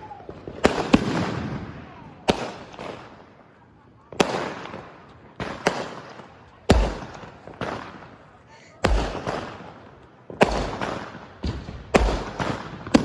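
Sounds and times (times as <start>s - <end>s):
fireworks bangs with rolling echo: 0.0s - 13.0s
deep firework boom: 6.7s - 7.8s, 8.8s - 9.6s, 10.4s - 13.0s.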